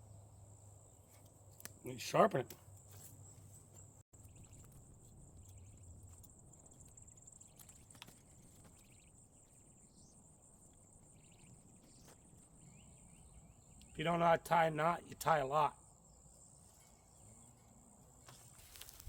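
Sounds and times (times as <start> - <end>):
faint chirps: 4.2 - 14.0.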